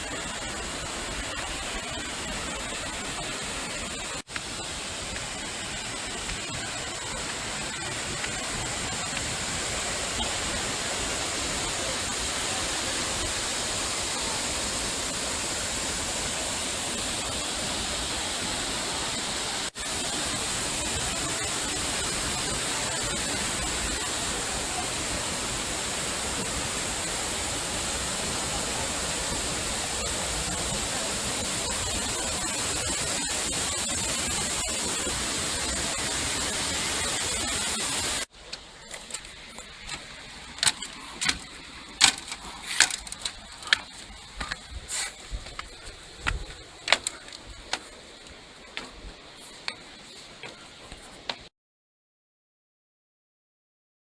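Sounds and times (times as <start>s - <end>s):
waterfall rushing: 0.0s - 51.3s.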